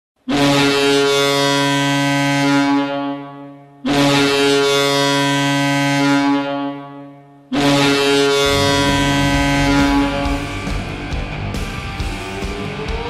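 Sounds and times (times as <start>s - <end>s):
hockey goal horn blasts: 0.3s - 10.8s.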